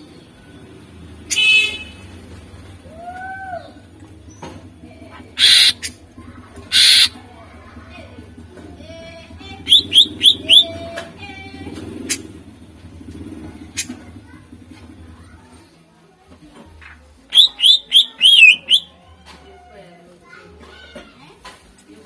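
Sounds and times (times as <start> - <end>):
bird song harsh rasps and whistles: 5.4 - 6.0, 6.7 - 7.2, 9.6 - 10.7, 17.3 - 19.0.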